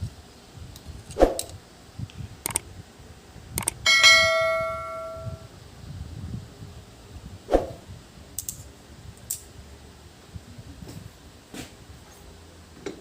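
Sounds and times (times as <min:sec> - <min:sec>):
sharp metal knocks: 0:03.6 - 0:05.4
struck metal ringing: 0:03.9 - 0:05.4.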